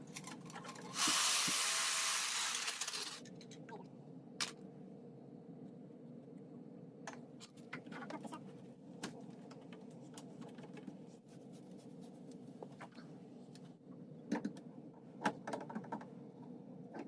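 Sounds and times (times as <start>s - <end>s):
steady low hum: 3.3s - 15.2s.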